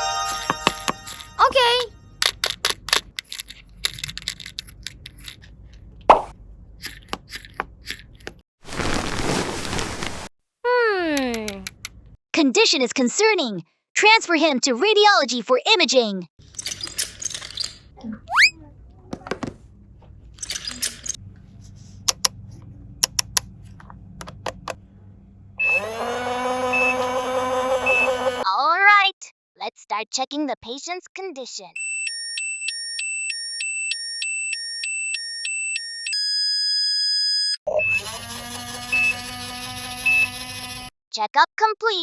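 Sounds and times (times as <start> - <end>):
plastic toy pieces clicking: 2.2 - 5.5
short high beeps: 18.3 - 18.5.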